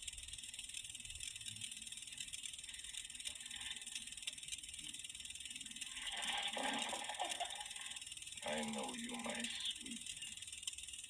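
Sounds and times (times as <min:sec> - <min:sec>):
old film soundtrack hiss: 0:05.4 - 0:10.6.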